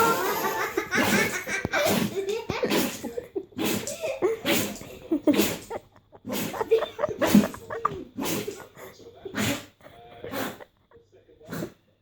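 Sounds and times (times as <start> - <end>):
dog sneezing: 1.0 - 7.6, 8.2 - 8.7, 9.3 - 10.6.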